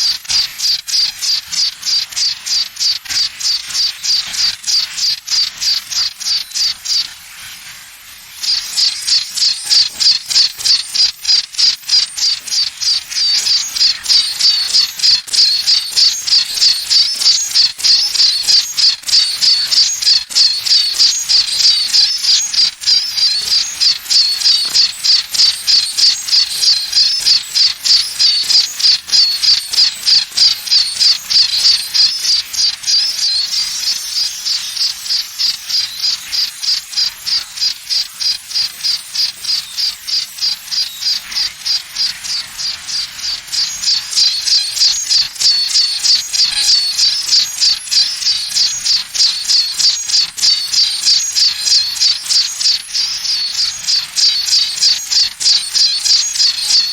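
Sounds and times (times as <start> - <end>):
high-pitched chirping pulses: 8.4 - 56.9.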